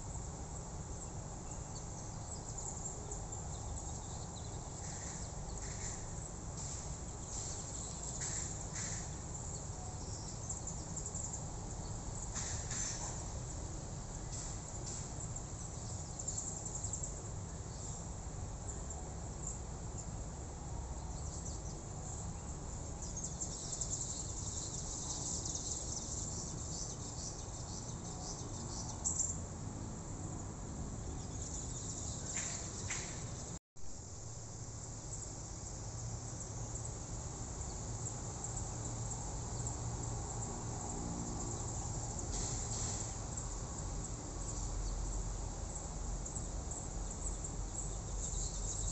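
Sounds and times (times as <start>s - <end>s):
insects chirring: 0.0s - 20.2s, 31.3s - 48.9s.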